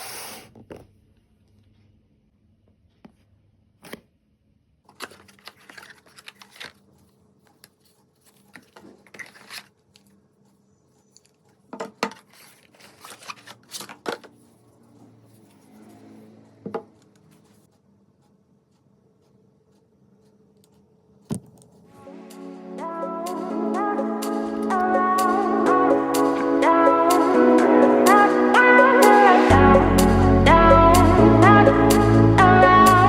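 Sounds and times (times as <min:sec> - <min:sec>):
cardboard tearing and rustling: 0:04.9 - 0:06.8, 0:08.6 - 0:09.8, 0:12.1 - 0:14.0.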